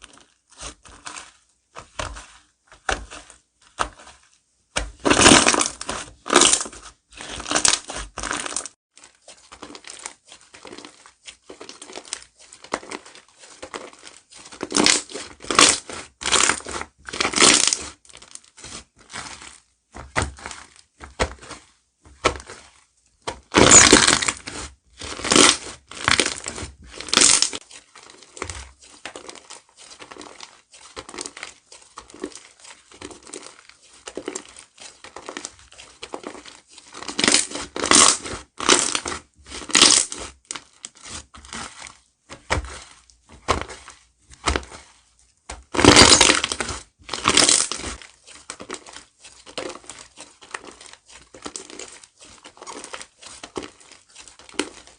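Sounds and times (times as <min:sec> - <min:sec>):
slime squeezed by hand: 0:23.4 - 0:28.6, 0:45.6 - 0:48.0.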